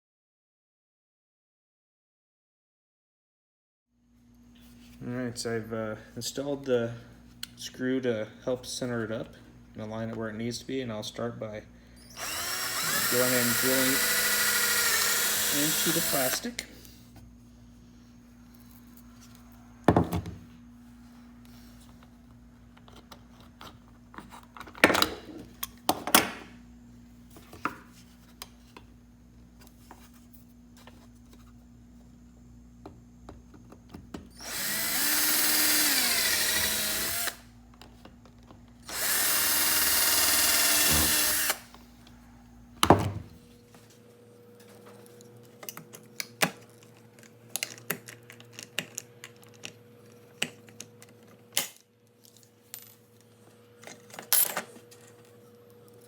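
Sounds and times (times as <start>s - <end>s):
power drill drilling into plastic: 12.1s - 16.4s, 34.4s - 37.4s, 38.8s - 41.7s
knocks and clicks of handling parts: 19.9s - 20.4s, 42.8s - 43.4s.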